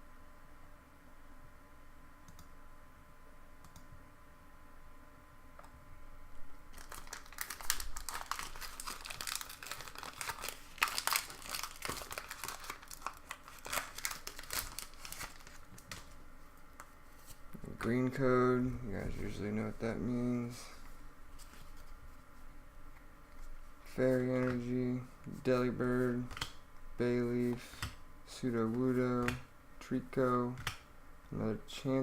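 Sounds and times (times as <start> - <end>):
faint room hum: 0.0 - 32.0
foil wrapper crinkling and tearing: 6.7 - 16.2.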